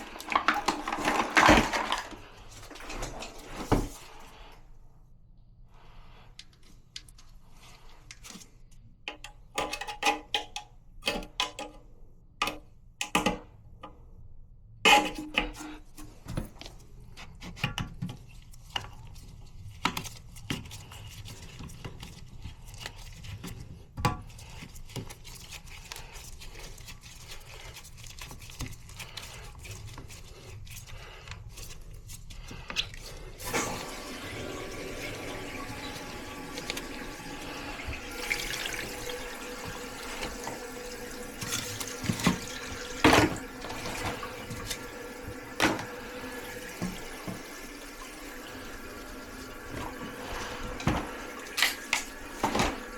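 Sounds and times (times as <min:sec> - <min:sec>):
toilet tank parts clinking: 0:00.0 - 0:04.0, 0:09.1 - 0:11.8, 0:14.9 - 0:16.5, 0:33.4 - 0:52.9
water running: 0:00.0 - 0:04.6, 0:32.3 - 0:52.9.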